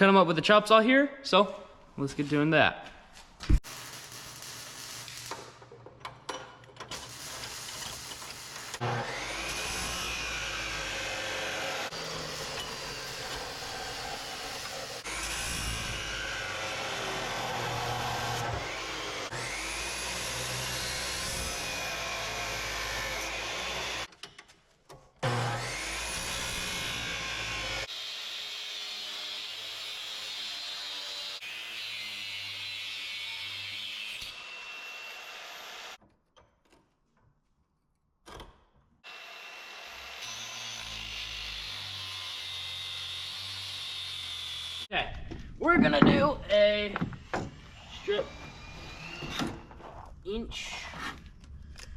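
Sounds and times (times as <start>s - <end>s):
chop saw cutting steel: 6.9s - 24.1s, 25.2s - 36.0s, 39.0s - 44.9s, 47.0s - 49.7s.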